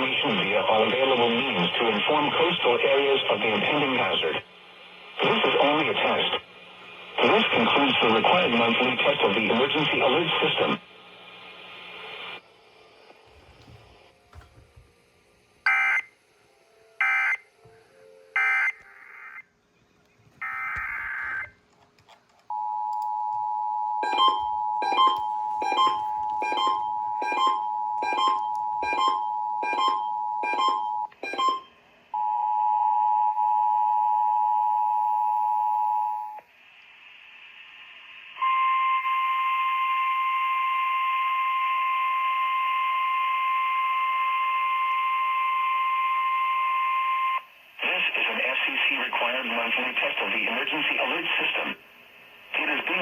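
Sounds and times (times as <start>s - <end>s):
sharp beeps: 24.0s - 31.7s.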